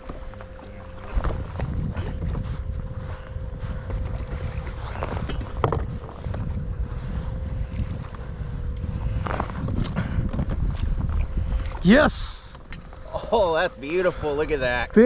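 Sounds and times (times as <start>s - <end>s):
electric motor whine: 0.0s - 11.9s
wind on microphone: 0.0s - 15.0s.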